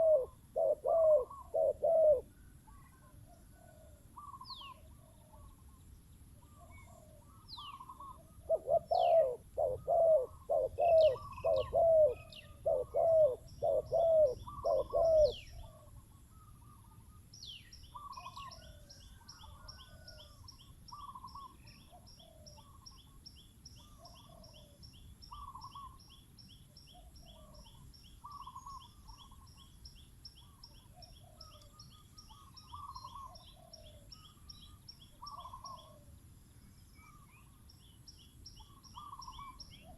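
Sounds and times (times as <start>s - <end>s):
doves cooing: 0.0s - 5.7s, 6.4s - 17.2s, 30.5s - 34.4s, 35.2s - 36.1s, 38.7s - 39.9s.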